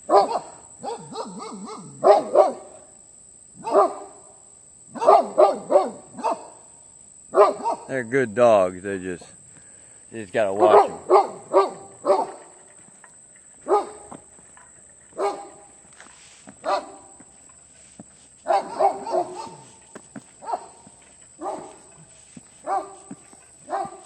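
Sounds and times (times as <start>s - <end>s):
dogs barking: 0.0s - 2.8s, 3.6s - 4.2s, 4.9s - 6.6s, 7.3s - 7.9s, 10.4s - 12.8s, 13.6s - 14.3s, 15.1s - 15.8s, 16.6s - 17.2s, 18.4s - 24.0s.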